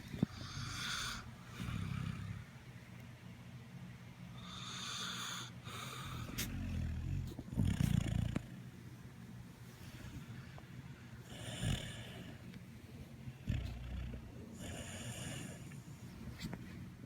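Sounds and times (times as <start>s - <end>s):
breathy hiss: 0.0s - 2.5s, 4.3s - 8.4s, 11.2s - 12.5s, 13.4s - 16.5s
low snoring rumble: 0.1s - 2.5s, 4.4s - 8.6s, 11.2s - 12.5s, 13.4s - 16.1s
rough snort: 4.6s - 8.4s.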